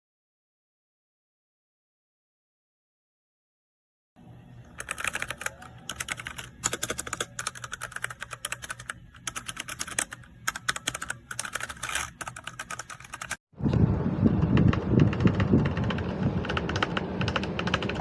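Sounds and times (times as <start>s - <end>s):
mechanical keyboard typing: 4.8s - 13.4s, 14.4s - 18.0s.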